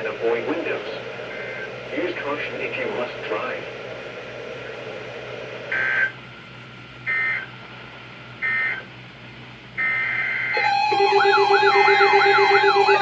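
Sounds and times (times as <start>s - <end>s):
radio hiss: 0.0s - 7.5s
digital data bursts: 9.8s - 13.0s.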